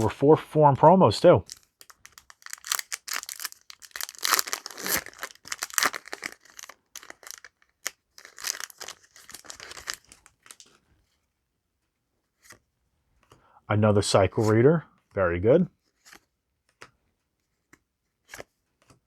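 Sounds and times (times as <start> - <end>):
wrapper being torn and crinkled: 1.5 - 10.7.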